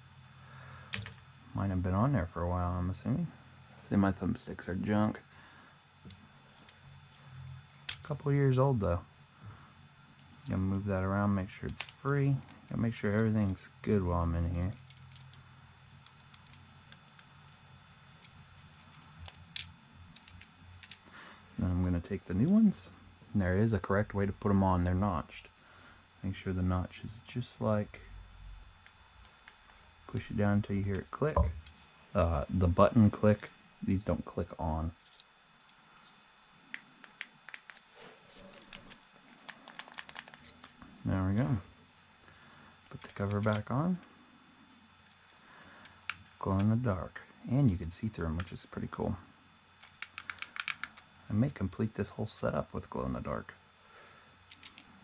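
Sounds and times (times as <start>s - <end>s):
small plastic clicks: 49.8s - 51.0s.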